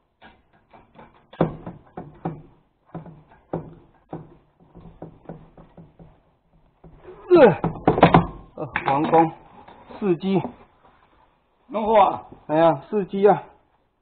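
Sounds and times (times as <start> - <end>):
hand tool clicks and knocks: 0.2 - 6.2.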